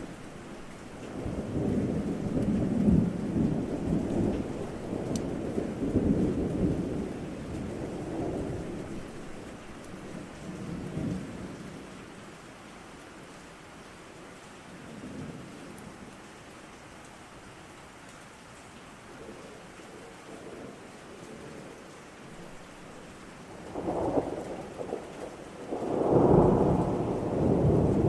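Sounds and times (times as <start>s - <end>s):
steady rain: 0.0s - 28.0s
thunder rolling: 23.6s - 28.0s.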